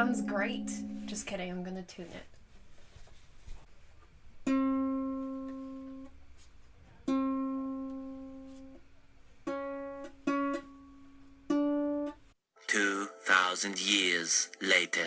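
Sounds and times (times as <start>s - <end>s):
ukulele string plucked: 4.4s - 6.1s, 7.0s - 8.8s.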